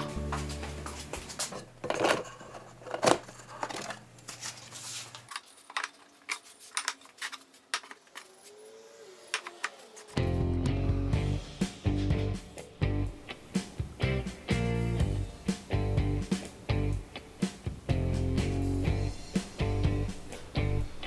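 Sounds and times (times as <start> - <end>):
low music bed: 0.0 - 1.5, 10.2 - 21.0.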